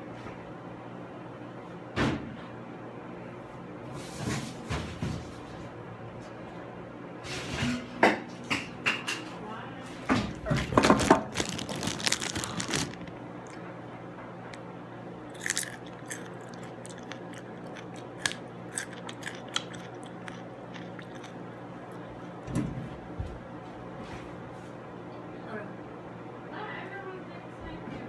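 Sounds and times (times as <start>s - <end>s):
crunchy food chewing: 10.3s - 13.6s, 15.2s - 22.4s.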